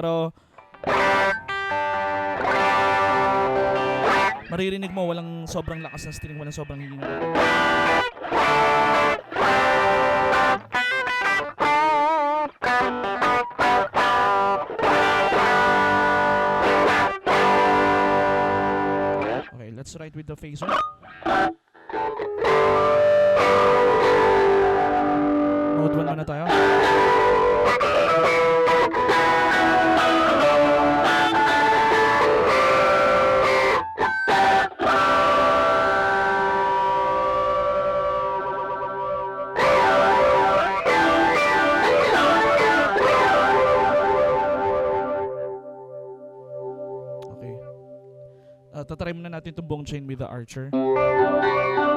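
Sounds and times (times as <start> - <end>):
electric guitar chords: 0.0 - 4.6, 5.6 - 19.6, 20.6 - 48.8, 50.7 - 51.9.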